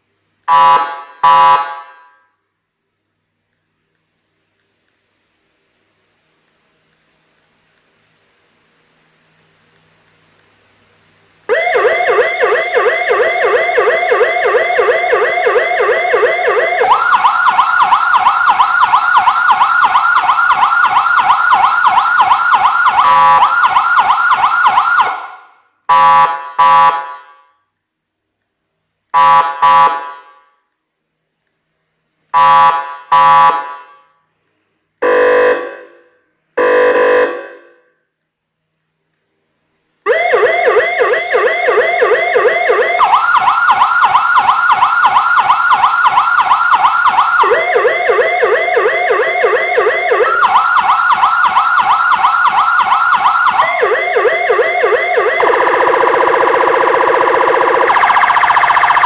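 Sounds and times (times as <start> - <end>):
electronic siren warbling: 11.5 - 25.1, 40.1 - 59.0
short loud siren blasts: 11.5 - 27.2, 40.1 - 59.0.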